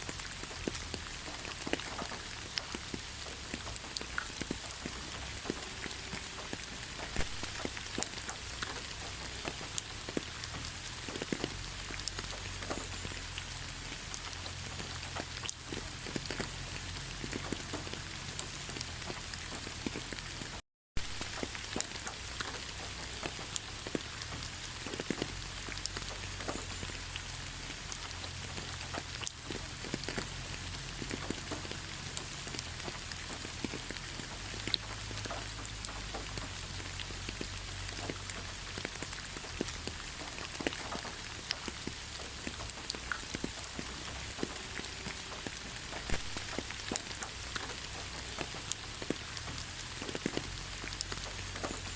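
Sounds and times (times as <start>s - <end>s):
rain with drops ticking: 0.0s - 51.9s.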